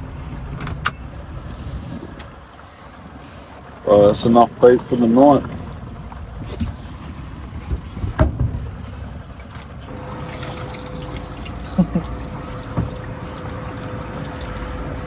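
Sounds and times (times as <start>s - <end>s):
water trickling and splashing: 1.0s - 15.0s
faint steady hum: 8.8s - 15.0s.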